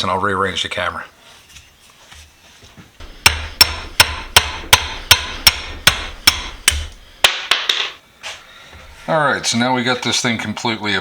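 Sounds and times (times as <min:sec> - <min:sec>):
hammer striking metal: 0:03.0 - 0:08.0.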